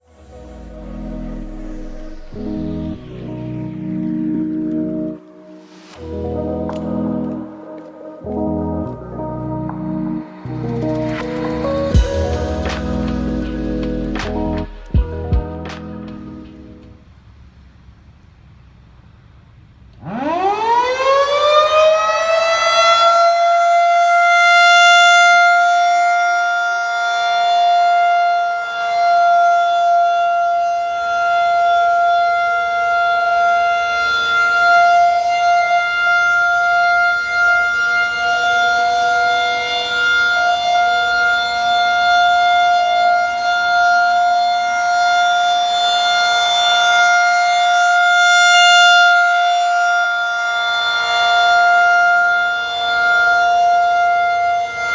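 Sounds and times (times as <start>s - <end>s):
tornado siren wailing: 0.0s - 16.4s, 20.0s - 54.9s.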